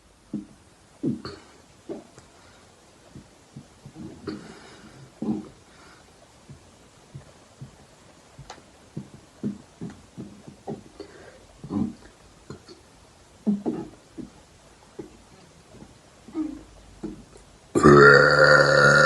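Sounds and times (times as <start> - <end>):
woman making throat sounds: 0.3 - 2.2, 3.6 - 5.6, 9.0 - 14.4, 16.3 - 19.0
woman burping: 17.8 - 19.0.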